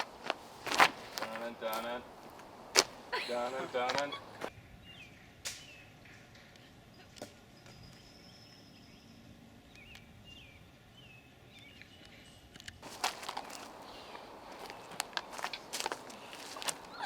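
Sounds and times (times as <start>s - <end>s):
loud crackling rustle: 0.0s - 3.1s, 12.8s - 17.0s
birds chirping: 0.0s - 17.0s
outdoor background: 0.0s - 17.0s.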